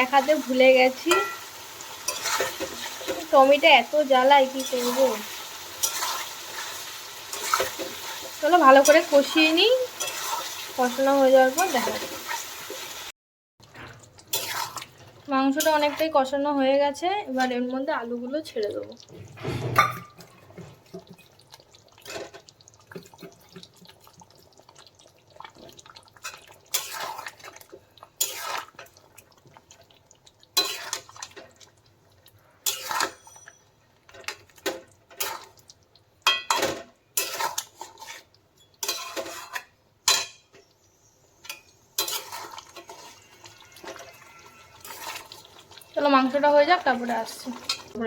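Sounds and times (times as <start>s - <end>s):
cooking hiss: 0.0s - 13.1s, 34.6s - 48.0s
metal spoon clanking in pan: 0.3s - 3.6s, 4.2s - 10.6s, 19.4s - 21.4s, 30.6s - 31.4s, 32.6s - 33.6s, 36.2s - 40.7s, 41.4s - 48.0s.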